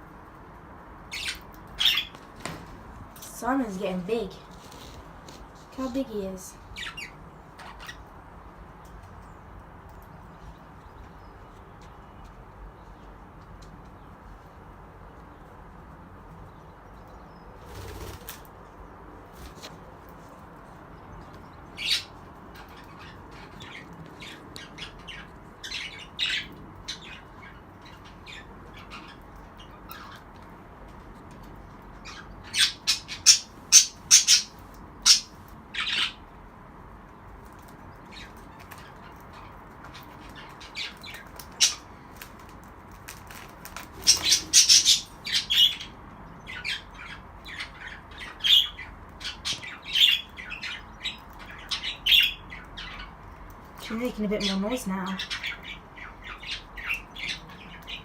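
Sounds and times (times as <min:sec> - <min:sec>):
budgerigars chirping and squawking: 0:01.1 - 0:02.2, 0:06.8 - 0:08.1, 0:21.7 - 0:30.2, 0:32.0 - 0:36.2, 0:38.0 - 0:41.9, 0:44.0 - 0:53.3, 0:54.0 - 0:58.0.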